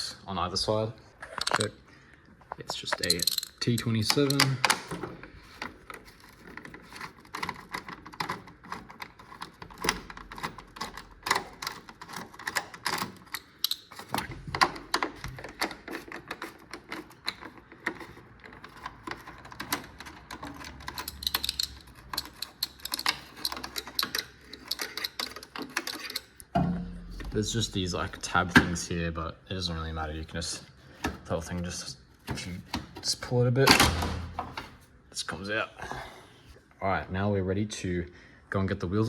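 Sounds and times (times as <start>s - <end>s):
hand ratchet clicking: 5.6s - 26.4s.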